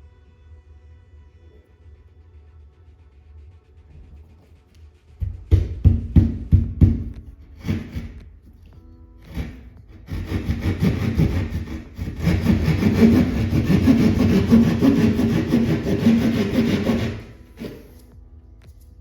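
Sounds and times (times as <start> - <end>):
hand saw cutting drywall: 7.4 - 8.2, 9.3 - 18.0.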